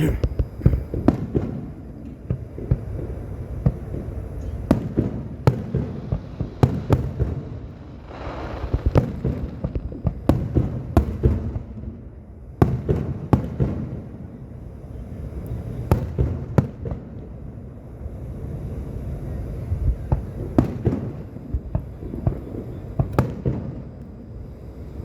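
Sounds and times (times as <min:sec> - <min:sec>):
firework crackling: 0:00.0 - 0:25.0
firework booms: 0:00.1 - 0:14.3, 0:19.9 - 0:23.9.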